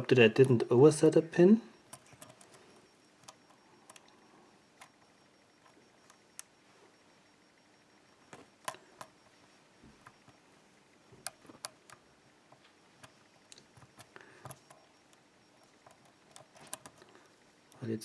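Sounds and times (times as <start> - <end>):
lock pick clicking in lock: 15.8 - 17.0.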